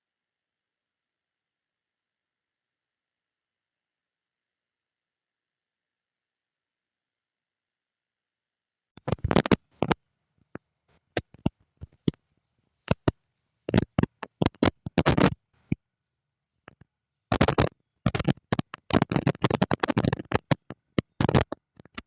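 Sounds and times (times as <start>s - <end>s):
scratchy rustling: 9.0s - 15.8s, 17.3s - 22.0s
sharp snapping crackles: 12.9s - 15.4s, 16.7s - 22.0s.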